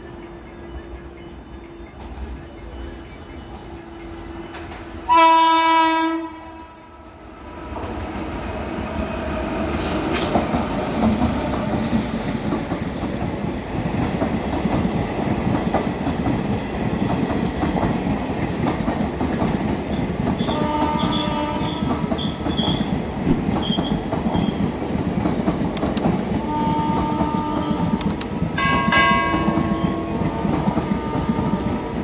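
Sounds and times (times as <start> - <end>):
train rumbling on track: 0.0 - 32.0
locomotive horn blast: 5.1 - 6.8, 20.5 - 21.8.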